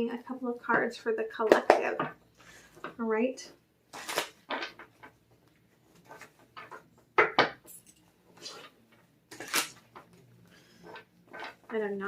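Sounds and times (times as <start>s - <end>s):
sharp knocks and clatters: 6.0s - 7.7s.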